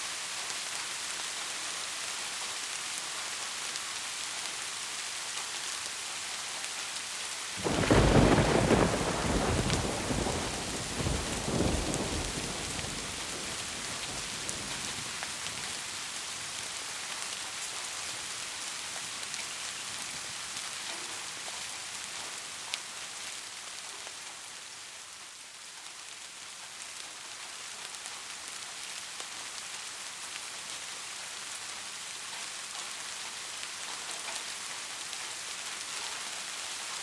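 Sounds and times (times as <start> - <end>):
heavy rain hiss: 0.0 - 37.0
thunder rumble: 7.6 - 15.2.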